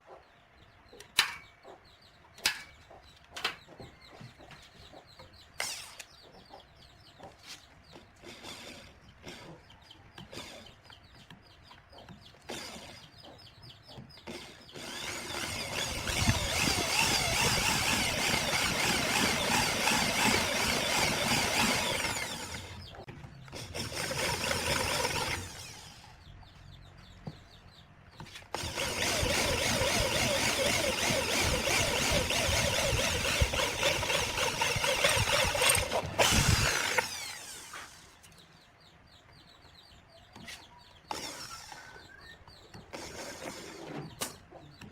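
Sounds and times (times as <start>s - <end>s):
angle grinder on wood: 8.2s - 9.6s, 14.3s - 26.1s, 28.5s - 38.2s.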